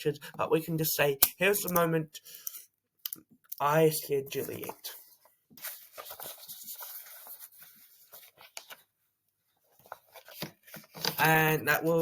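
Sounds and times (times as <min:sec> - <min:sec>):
faint rustling and scraping: 0:04.3 - 0:08.9.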